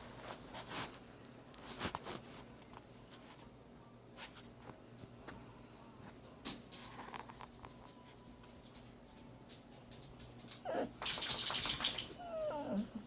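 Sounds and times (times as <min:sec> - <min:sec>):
dogs whining: 0:10.4 - 0:13.0.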